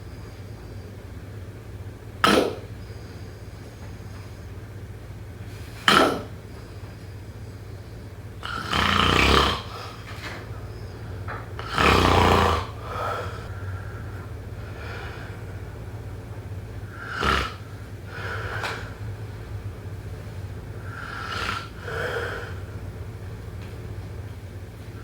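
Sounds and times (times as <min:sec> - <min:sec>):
person snoring loudly: 0:08.4 - 0:10.3, 0:11.6 - 0:13.5, 0:16.9 - 0:19.0, 0:20.8 - 0:22.6
low hum: 0:09.7 - 0:25.0.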